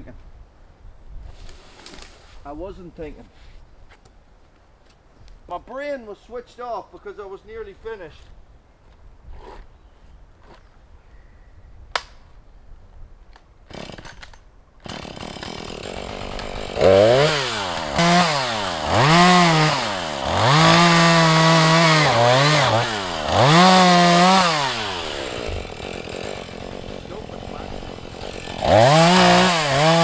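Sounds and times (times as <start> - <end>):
chainsaw engine revving: 13.7 - 14.2, 14.8 - 30.0.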